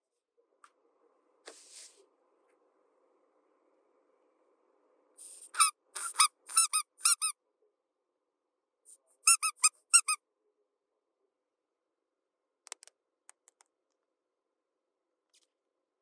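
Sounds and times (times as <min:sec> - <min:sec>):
high-pitched squeaks: 0:05.4 - 0:07.3, 0:09.3 - 0:10.2.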